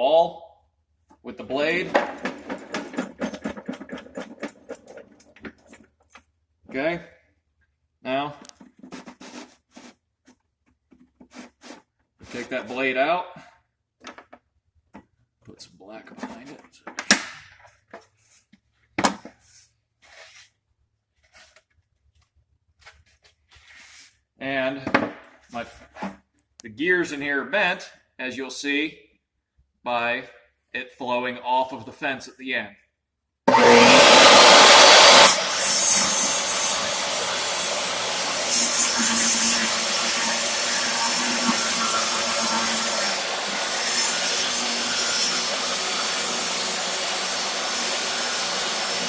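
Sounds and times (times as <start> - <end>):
rustling and scraping: 1.8 - 6.3, 8.5 - 12.9, 17.6 - 24.3
table saw running: 33.5 - 49.0.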